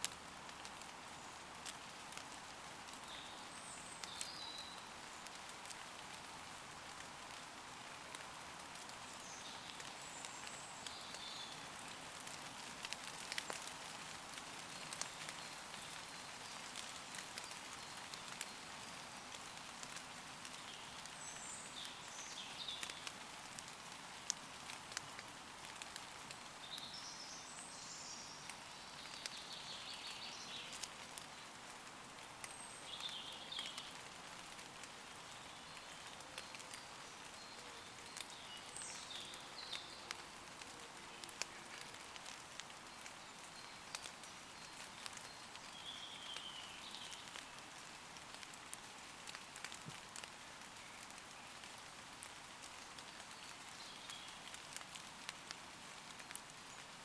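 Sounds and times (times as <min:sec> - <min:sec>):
rain falling on leaves: 0:00.0 - 0:57.0.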